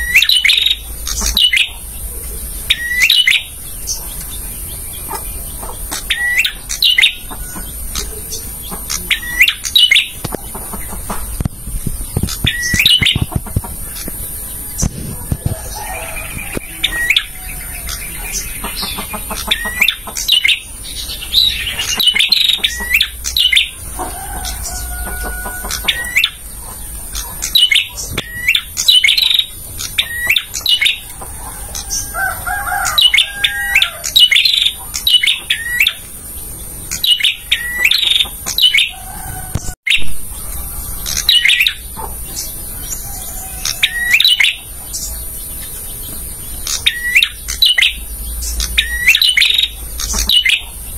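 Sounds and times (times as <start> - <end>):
bird chirping: 0.0 - 50.9.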